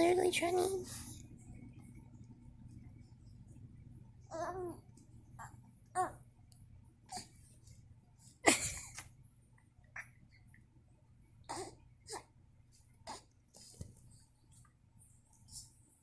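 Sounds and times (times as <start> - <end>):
baby grunting: 11.4 - 12.3, 13.0 - 13.3.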